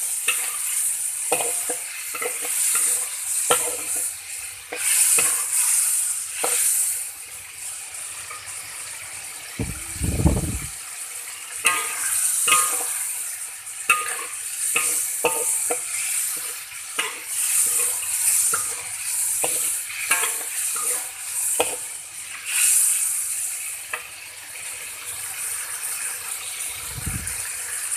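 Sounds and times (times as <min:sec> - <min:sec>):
utensil scraping a pan: 0:00.0 - 0:07.1, 0:13.9 - 0:23.1
shrimp sizzling in a pan: 0:00.0 - 0:27.9.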